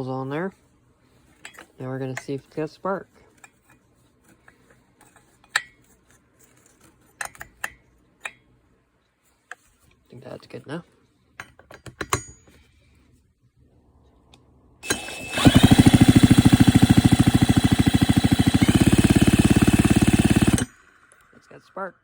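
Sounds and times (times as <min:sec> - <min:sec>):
chainsaw engine turning over: 0:14.8 - 0:21.3.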